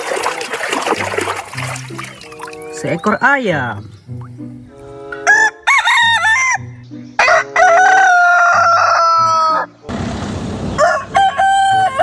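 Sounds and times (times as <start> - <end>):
rooster crowing: 7.2 - 9.7, 10.8 - 12.0.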